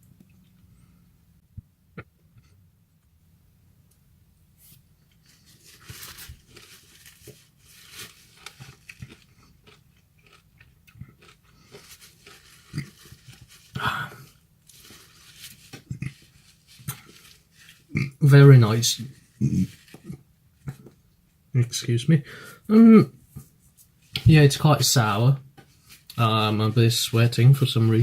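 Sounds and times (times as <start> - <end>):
wet chewing and biting: 6.4 - 13.8.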